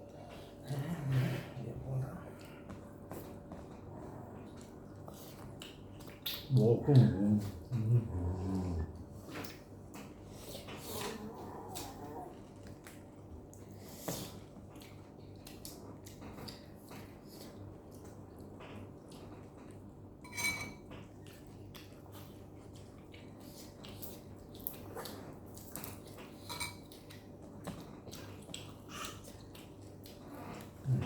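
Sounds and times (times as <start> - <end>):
cutlery clinking on dishes: 20.2 - 21.1, 26.4 - 27.0.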